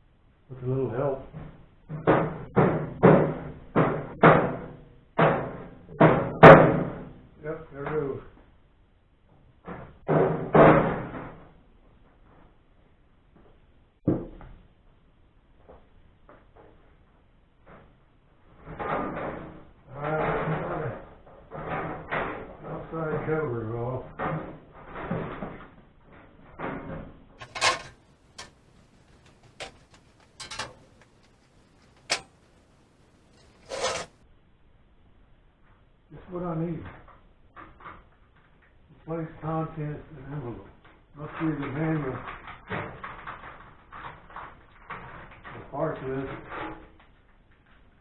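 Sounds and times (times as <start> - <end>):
knocks and clatters of parts: 1.2 - 8.6, 9.3 - 34.2, 36.8 - 39.1, 40.6 - 48.0
sheet metal cover banging: 1.4 - 7.2, 9.6 - 11.6, 18.5 - 23.3, 24.1 - 32.4.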